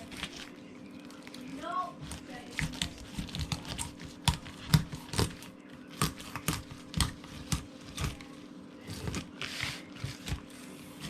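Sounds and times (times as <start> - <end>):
knife crunching through fish: 2.0 - 8.2.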